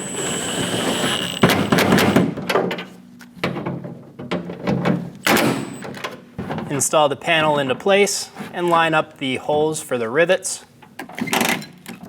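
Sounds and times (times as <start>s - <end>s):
power tool whine: 0.0s - 2.3s.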